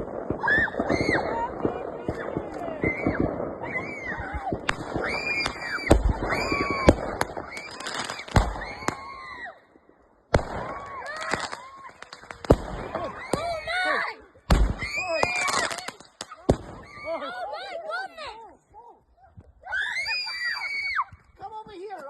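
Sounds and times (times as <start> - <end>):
fireworks bangs and pops: 0.0 - 17.4
whistling firework tones: 0.3 - 9.7.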